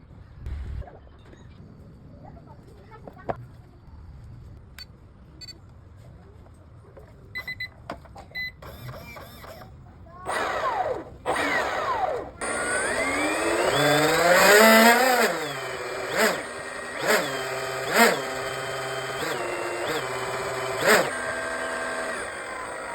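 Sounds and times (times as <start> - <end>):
short electronic beeps: 7.4 - 7.7
electric motor whine: 10.3 - 22.9.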